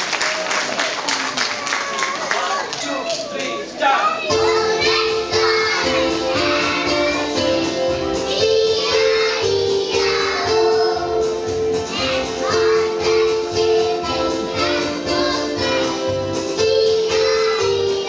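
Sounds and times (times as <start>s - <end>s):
children singing: 4.2s - 18.0s
musical accompaniment: 4.2s - 18.0s.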